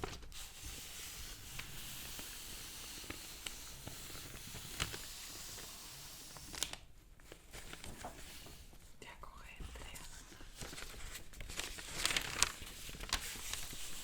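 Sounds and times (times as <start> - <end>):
paper rustling and crinkling: 0.0 - 8.8, 9.4 - 14.0.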